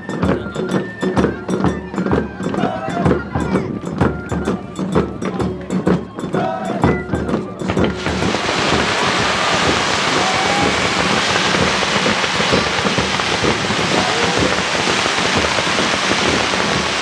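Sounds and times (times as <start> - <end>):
fireworks whistles: 7.6 - 17.0
fireworks crackling: 7.7 - 17.0.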